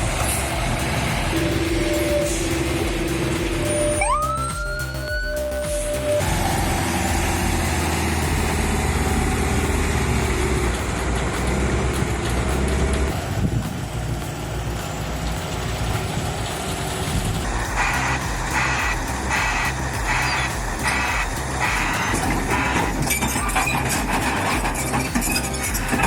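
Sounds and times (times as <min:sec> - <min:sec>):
diesel truck engine running: 0:00.0 - 0:26.0
siren-like whine: 0:00.2 - 0:10.8.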